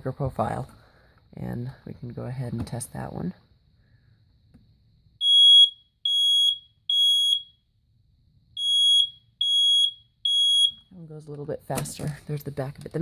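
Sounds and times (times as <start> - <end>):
smoke alarm beeps: 5.2 - 7.7, 8.5 - 10.9.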